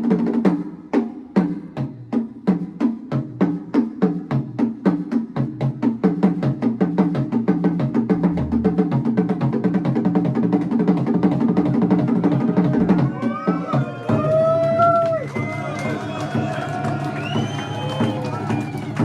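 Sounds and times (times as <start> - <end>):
fast drum beat: 0.0 - 19.0.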